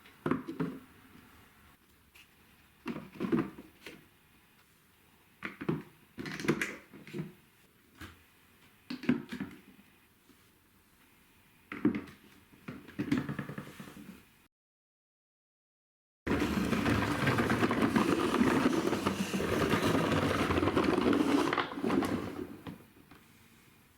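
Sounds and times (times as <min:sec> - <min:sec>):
marbles clattering on plastic track: 0:16.3 - 0:22.3.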